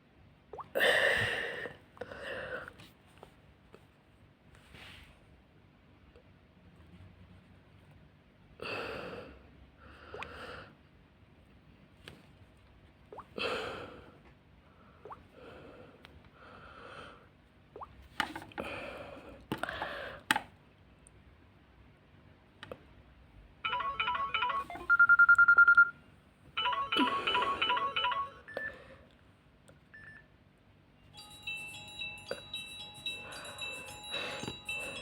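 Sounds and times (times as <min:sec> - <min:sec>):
phone ringtones: 0:23.6 - 0:26.0, 0:26.6 - 0:29.0, 0:31.1 - 0:35.0
electronic beeping melodies: 0:23.7 - 0:25.9, 0:26.6 - 0:28.8, 0:31.1 - 0:35.0
loud steady beep: 0:26.6 - 0:28.8.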